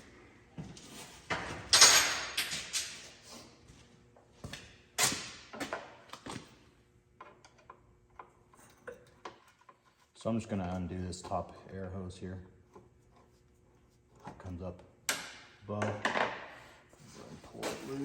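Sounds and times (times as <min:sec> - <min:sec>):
tools knocking and clattering: 0:15.1 - 0:16.5.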